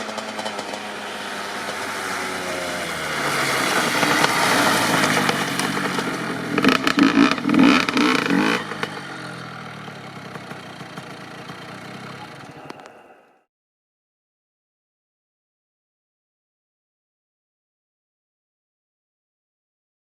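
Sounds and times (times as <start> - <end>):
dirt bike engine revving: 0.0 - 13.2.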